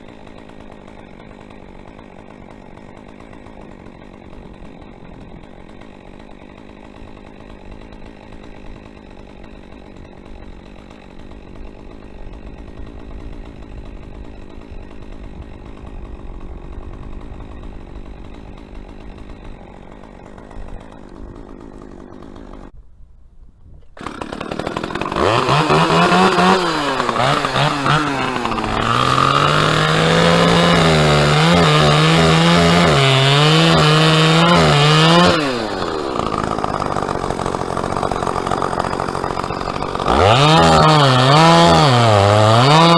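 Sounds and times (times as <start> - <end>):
chainsaw engine revving: 0.0 - 22.8, 24.0 - 42.9.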